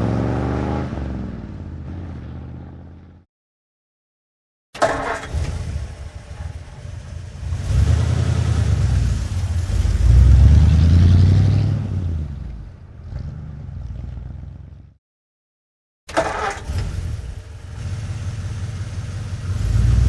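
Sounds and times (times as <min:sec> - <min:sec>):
truck engine running: 0:04.8 - 0:10.5.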